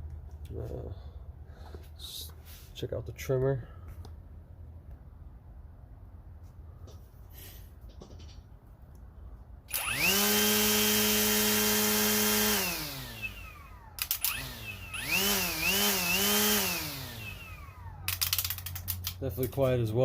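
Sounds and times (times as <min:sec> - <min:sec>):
string trimmer whining: 0:09.7 - 0:19.0.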